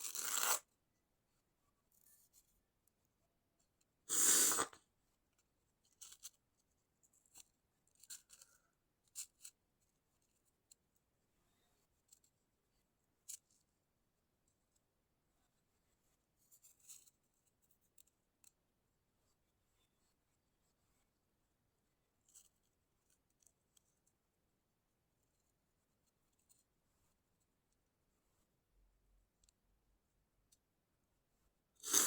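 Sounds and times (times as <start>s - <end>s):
stifled sneeze: 4.1s - 4.8s.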